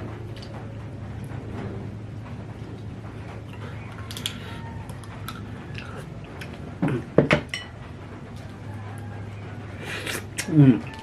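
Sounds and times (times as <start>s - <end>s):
person chewing noodles: 3.4s - 7.0s.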